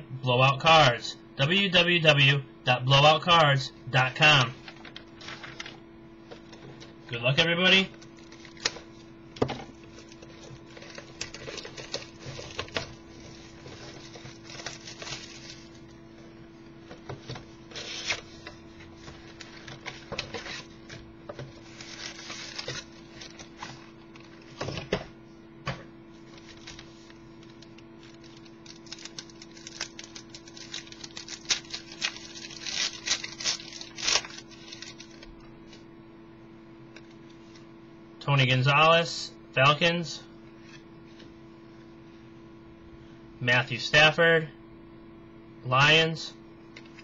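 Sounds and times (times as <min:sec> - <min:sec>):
steady low hum: 0:00.0 - 0:47.0
wrappers rustling and crinkling: 0:09.8 - 0:15.9, 0:21.5 - 0:24.5, 0:26.2 - 0:35.2.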